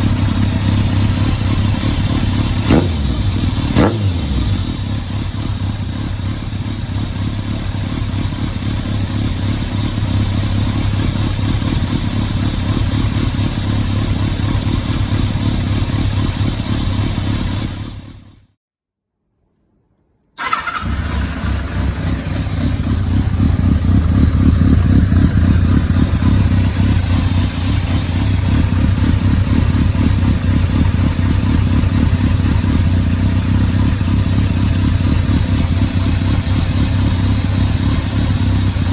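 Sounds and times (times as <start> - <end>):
motorcycle engine running: 0.0 - 18.6, 20.4 - 38.9.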